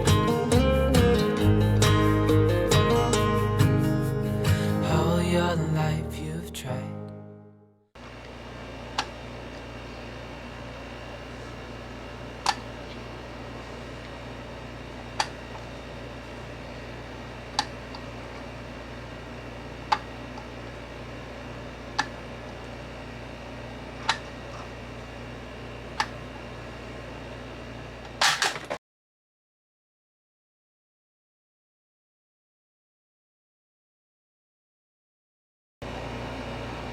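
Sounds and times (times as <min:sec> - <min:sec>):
room noise with low hum: 0:08.0 - 0:28.8, 0:35.8 - 0:36.9.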